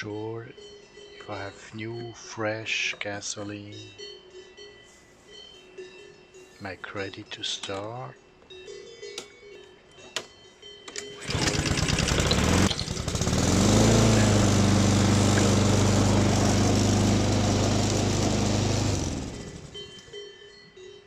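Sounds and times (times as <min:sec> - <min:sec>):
lawn mower engine starting: 0:11.0 - 0:20.0.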